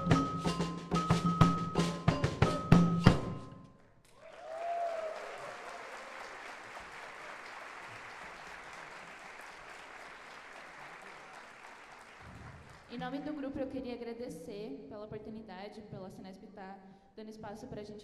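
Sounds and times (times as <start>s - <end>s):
drums striking: 0.0s - 3.5s
audience applauding: 4.1s - 12.9s
people cheering: 4.1s - 12.9s.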